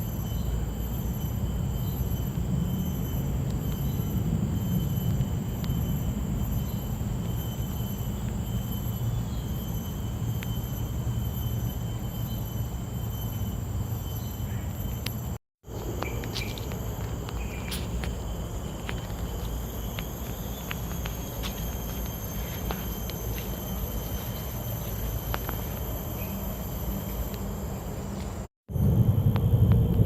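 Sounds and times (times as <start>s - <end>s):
insect trilling: 0.0s - 28.2s
low rumble: 28.7s - 30.0s.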